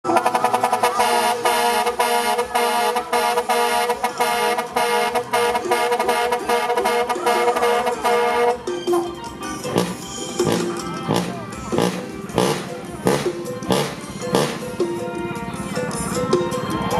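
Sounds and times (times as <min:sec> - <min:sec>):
truck air horn blasts: 0:00.1 - 0:09.1.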